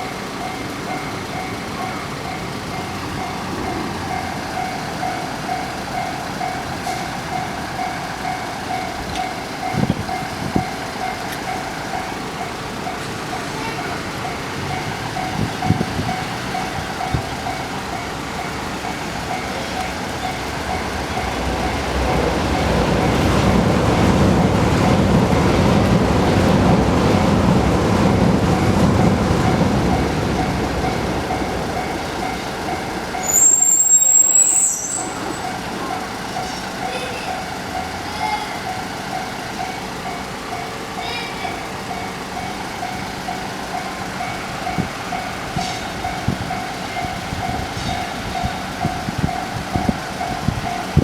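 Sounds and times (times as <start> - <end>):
level-crossing alarm ringing: 0.0 - 51.0
train rumble: 0.0 - 51.0
high-pitched squeal: 30.4 - 36.7.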